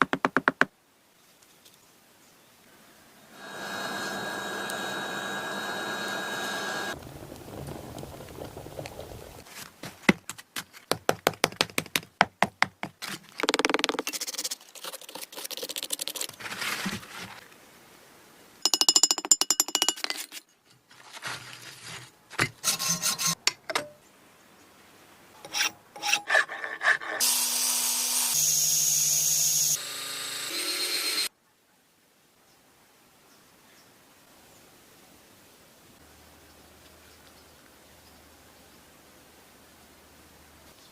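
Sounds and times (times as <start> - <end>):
fast-pulsing whir: 3.4 - 7.0
filing or sawing and scraping: 21.0 - 23.4, 25.4 - 28.4.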